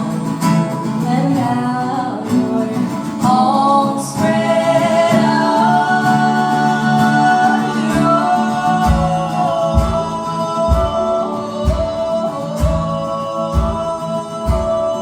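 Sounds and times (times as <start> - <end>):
low steady drum beat: 8.8 - 15.0.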